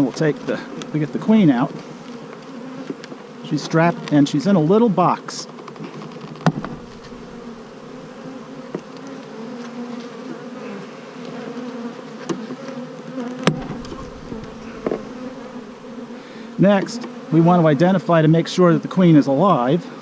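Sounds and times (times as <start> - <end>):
bees buzzing: 0.0 - 20.0
sharp knocks: 6.4 - 7.3, 13.4 - 15.8.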